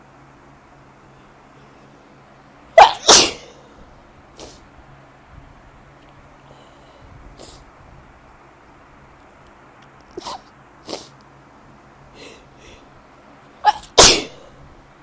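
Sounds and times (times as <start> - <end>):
woman sneezing: 2.8 - 3.6, 10.2 - 11.1, 13.6 - 14.5
faint breaths: 6.3 - 7.7, 12.1 - 13.0.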